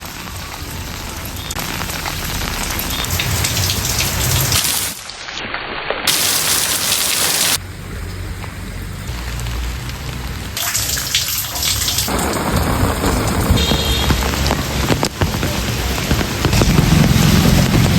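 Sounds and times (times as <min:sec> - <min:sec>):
heavy rain pattering: 0:00.0 - 0:05.1, 0:06.1 - 0:17.9.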